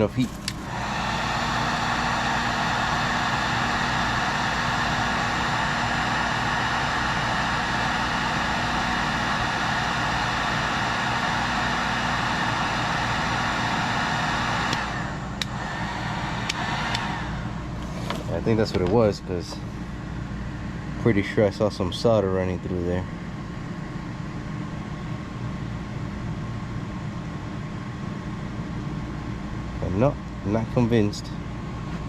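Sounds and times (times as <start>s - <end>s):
heat gun blowing: 0.0s - 18.4s.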